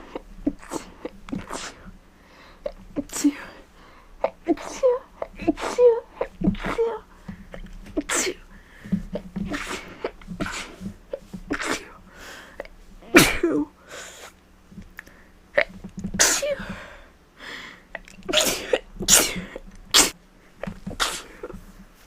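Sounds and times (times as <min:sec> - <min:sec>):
woman sneezing: 0:04.5 - 0:07.0, 0:13.0 - 0:13.7, 0:16.2 - 0:16.7, 0:18.3 - 0:20.2, 0:21.0 - 0:21.6.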